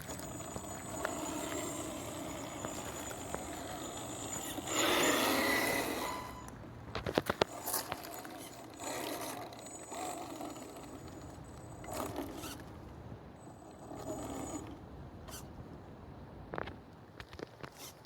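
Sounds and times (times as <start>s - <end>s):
high electric motor whine: 0.0s - 12.6s
scraping and crunching over rough ground: 0.0s - 12.7s.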